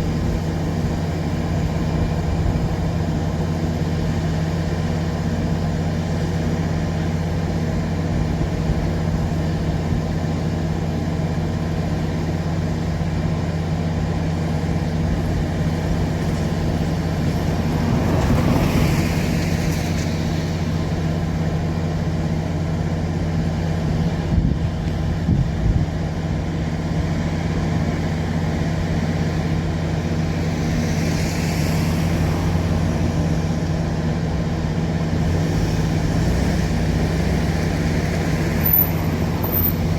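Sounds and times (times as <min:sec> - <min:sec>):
engine idling: 0:00.0 - 0:39.9
vehicle passing: 0:16.3 - 0:21.3.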